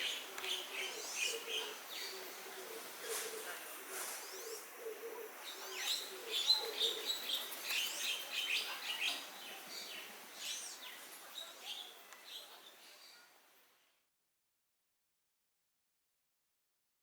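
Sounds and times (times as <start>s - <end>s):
small birds chirping: 0.0s - 13.4s.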